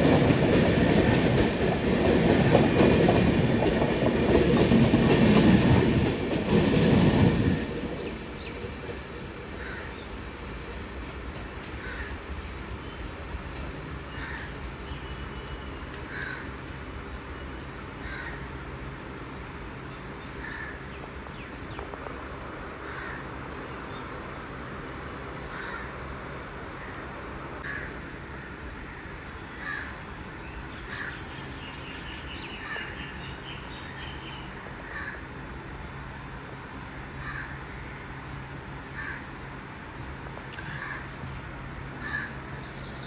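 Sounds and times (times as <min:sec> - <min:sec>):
crow cawing: 0:16.1 - 0:16.6, 0:18.0 - 0:18.4, 0:20.4 - 0:20.8, 0:22.8 - 0:23.3, 0:25.5 - 0:26.0, 0:27.6 - 0:30.0, 0:30.9 - 0:31.2, 0:34.8 - 0:35.3, 0:37.2 - 0:38.0, 0:39.0 - 0:39.3, 0:40.6 - 0:41.1, 0:42.0 - 0:42.4.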